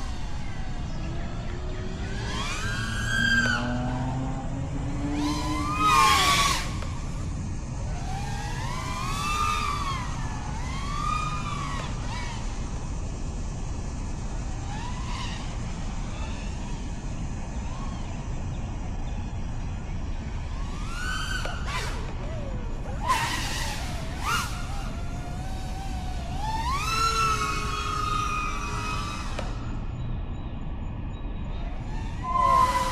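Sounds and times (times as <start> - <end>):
drone motors whining: 0.0 - 32.9
steady low rumble: 10.0 - 26.7.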